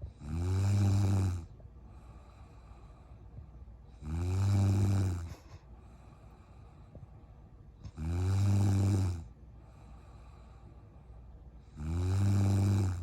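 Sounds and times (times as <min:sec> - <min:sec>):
quiet breathing: 0:00.0 - 0:13.0
woman snoring: 0:00.1 - 0:01.5, 0:04.0 - 0:05.5, 0:07.9 - 0:09.3, 0:11.7 - 0:13.0.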